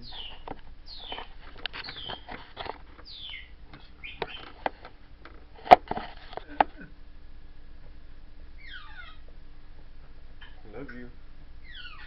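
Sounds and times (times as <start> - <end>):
parrot squeaky whistles: 8.6 - 9.2, 11.6 - 12.0.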